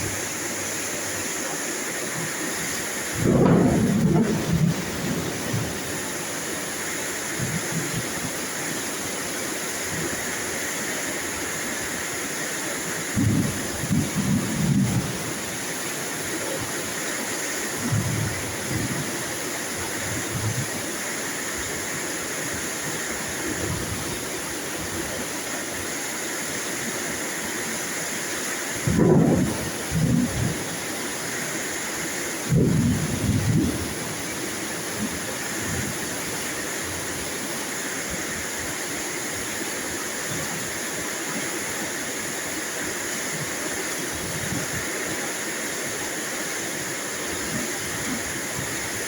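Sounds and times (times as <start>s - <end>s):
heavy rain: 0.0s - 49.0s
thunder rolling: 3.0s - 6.1s, 13.2s - 15.3s, 28.8s - 30.7s, 32.5s - 34.4s.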